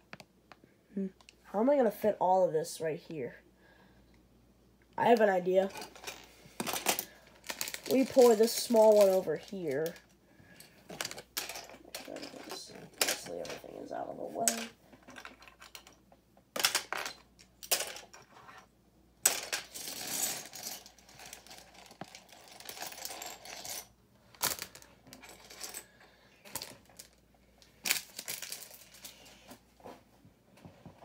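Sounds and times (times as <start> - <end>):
plastic toy bricks clattering: 5.2 - 10.0, 10.9 - 16.0, 16.6 - 18.2, 27.8 - 29.2.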